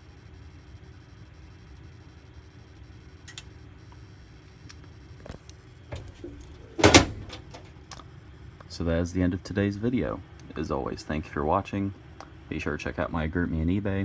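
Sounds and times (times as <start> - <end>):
faint low hum: 2.4 - 8.0.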